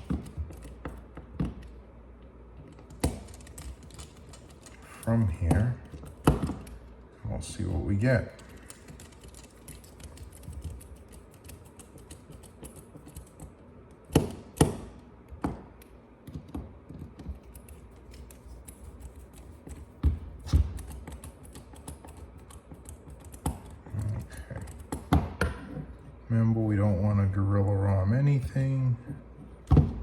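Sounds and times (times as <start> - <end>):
small parts clicking and tapping: 2.6 - 7.0, 8.3 - 19.9.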